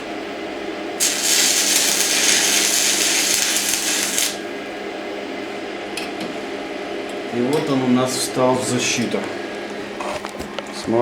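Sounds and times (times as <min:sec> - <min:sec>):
welding arc crackling hiss: 0:01.0 - 0:04.5.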